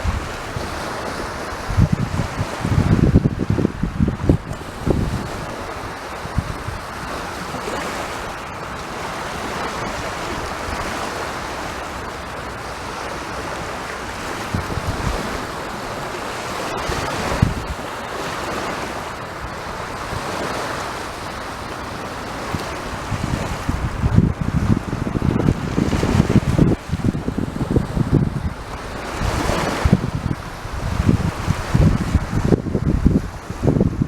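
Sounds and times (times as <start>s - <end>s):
sea waves breaking on shore: 0.0s - 34.0s
wind buffeting microphone: 0.0s - 34.0s.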